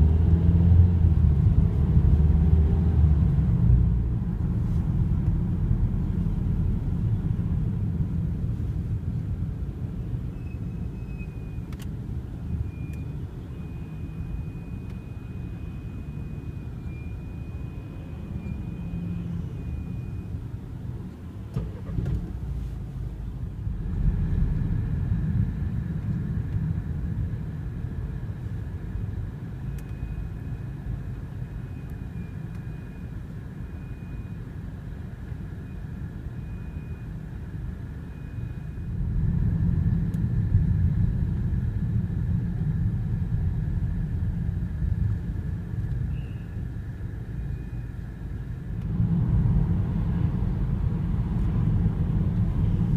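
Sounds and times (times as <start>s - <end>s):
rolling car rumble: 0.0s - 52.9s
high brake squeal: 10.3s - 11.7s, 12.5s - 20.4s, 38.0s - 38.9s, 46.0s - 48.0s.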